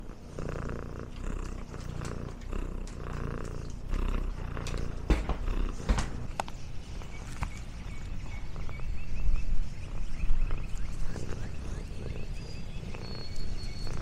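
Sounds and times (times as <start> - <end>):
cat purring: 0.0 - 14.0
sharp knocks: 4.9 - 6.4.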